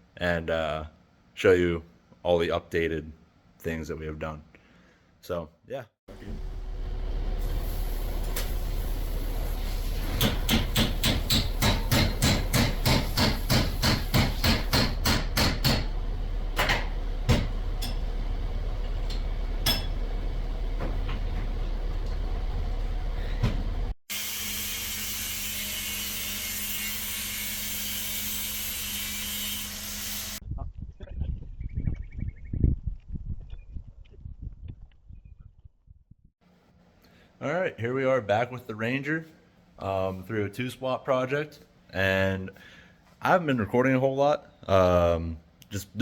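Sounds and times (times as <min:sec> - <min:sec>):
low hum: 0:06.1 - 0:09.9, 0:15.2 - 0:24.0
hammer blows: 0:10.0 - 0:18.2.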